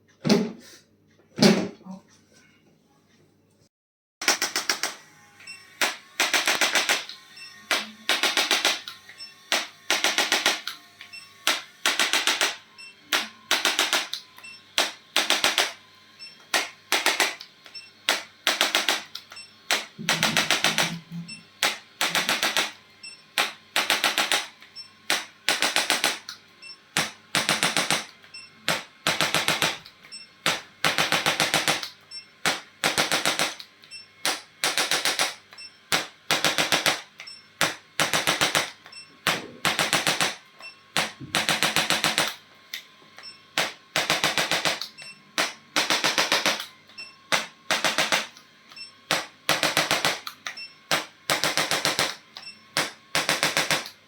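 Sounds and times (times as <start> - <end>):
electric percussive tool tapping: 5.8 - 15.8, 16.4 - 42.4, 43.2 - 54.0.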